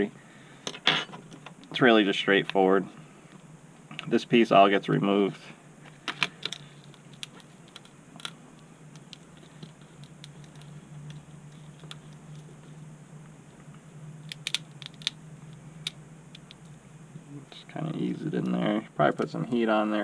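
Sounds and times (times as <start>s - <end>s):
faint low hum: 0.0s - 20.0s
small plastic parts clicking: 14.3s - 15.2s.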